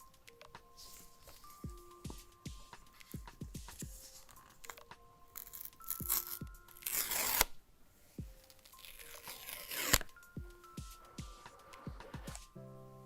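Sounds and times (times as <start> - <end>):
electronic music with kick drum: 1.6 - 4.2, 6.0 - 6.7, 8.2 - 8.4, 10.2 - 12.6
loud tearing noise: 5.4 - 7.5, 8.9 - 10.1.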